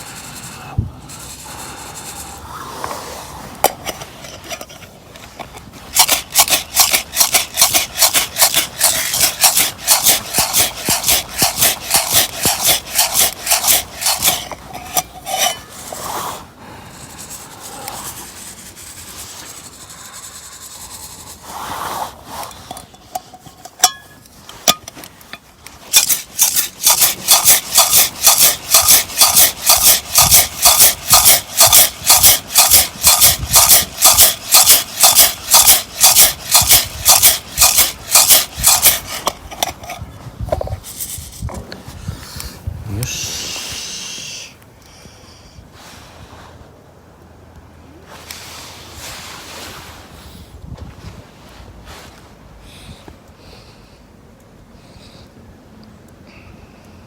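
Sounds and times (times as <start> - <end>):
coffee beans rattling in strainer: 5.9 - 15.7, 25.8 - 39.9, 40.8 - 41.5.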